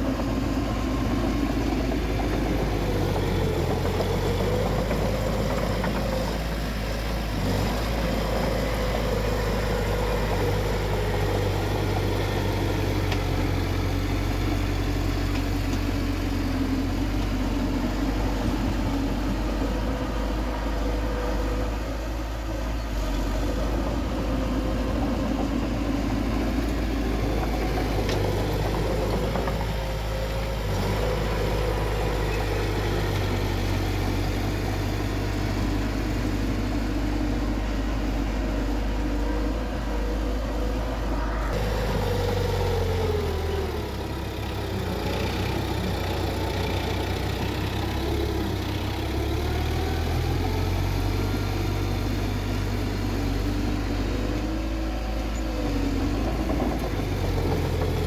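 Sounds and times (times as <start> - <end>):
bulldozer diesel engine running: 0.0 - 58.0.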